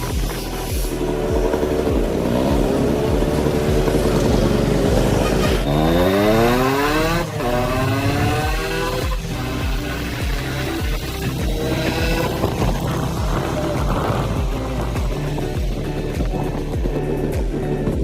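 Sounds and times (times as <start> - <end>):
motorcycle engine revving: 0.0 - 18.0.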